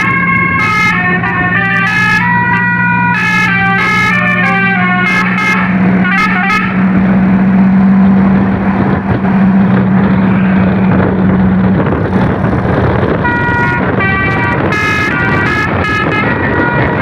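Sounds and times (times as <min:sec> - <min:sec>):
bus multi-tone horn: 0:00.0 - 0:07.4, 0:13.2 - 0:17.0
road and wind noise: 0:00.0 - 0:17.0.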